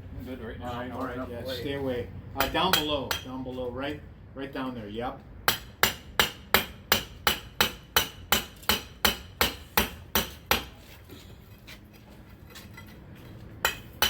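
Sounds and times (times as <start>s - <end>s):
hammer striking steel chisel: 5.5s - 10.8s, 13.6s - 14.0s.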